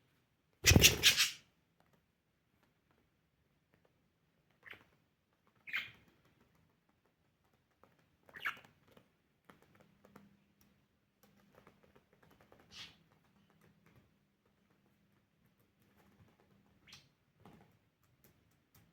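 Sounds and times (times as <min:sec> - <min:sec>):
faint small clicks: 0:15.5 - 0:18.9.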